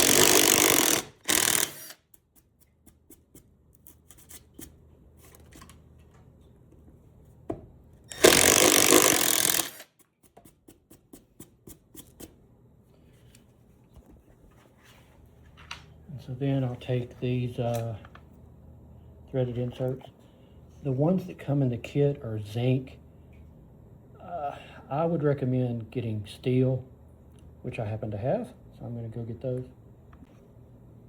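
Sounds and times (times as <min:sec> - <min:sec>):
power drill boring: 0:00.0 - 0:02.0, 0:08.1 - 0:09.9.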